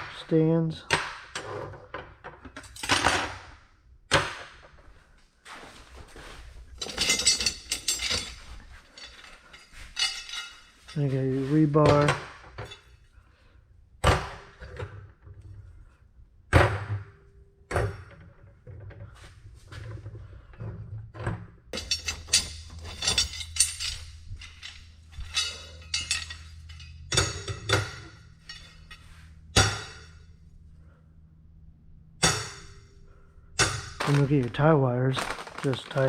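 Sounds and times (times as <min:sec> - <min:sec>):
metal clinking: 0:06.7 - 0:13.2, 0:21.8 - 0:30.4
metal rebar clanking: 0:06.8 - 0:13.0, 0:21.7 - 0:30.2.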